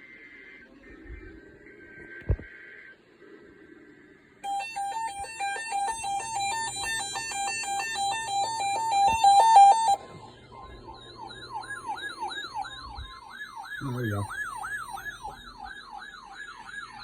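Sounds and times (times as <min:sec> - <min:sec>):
rapid stepping beeps: 0:04.4 - 0:15.5
rising siren-like sweep: 0:04.4 - 0:17.0.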